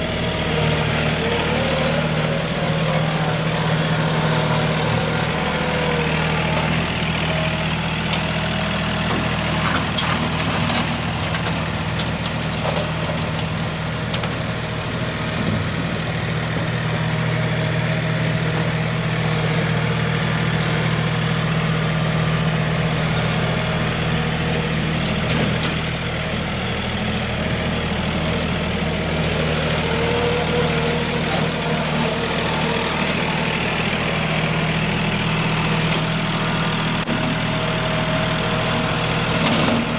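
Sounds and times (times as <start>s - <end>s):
engine humming steadily: 0.0s - 39.9s.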